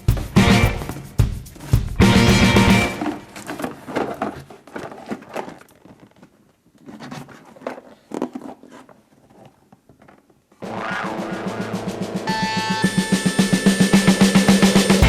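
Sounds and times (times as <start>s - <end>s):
plastic packaging crinkling: 2.9s - 10.4s.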